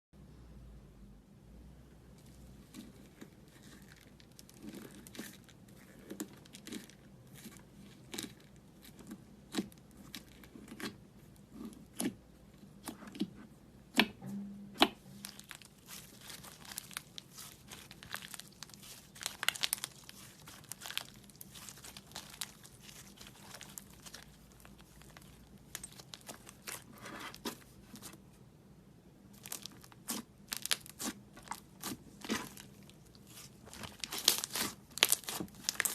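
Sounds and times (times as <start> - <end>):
slime crackling and popping: 2.2 - 11.0, 14.9 - 28.1, 29.3 - 35.9.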